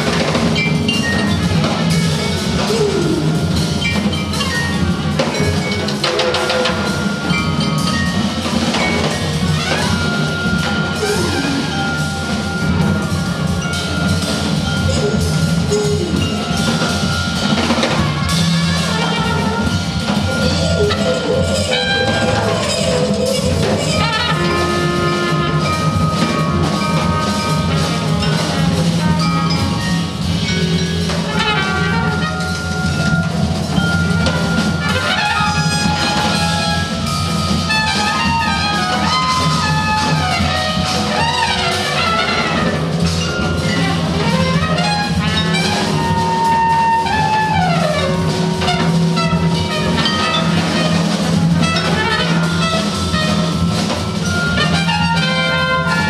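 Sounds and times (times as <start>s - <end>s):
brass playing: 0.0s - 56.0s
drums and percussion: 0.0s - 56.0s.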